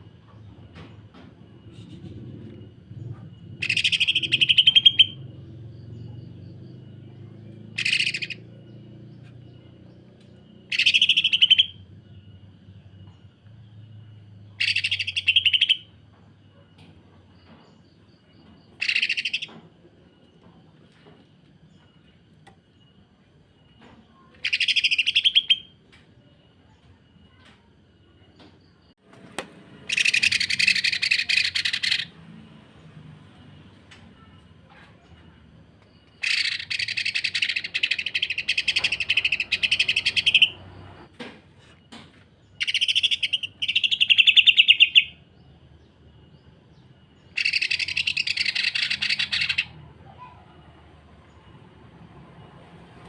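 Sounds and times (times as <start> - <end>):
bird rasping call: 3.6 - 5.2, 7.8 - 8.5, 10.6 - 11.8, 18.8 - 19.5, 29.9 - 32.2, 36.2 - 40.7, 47.3 - 50.4.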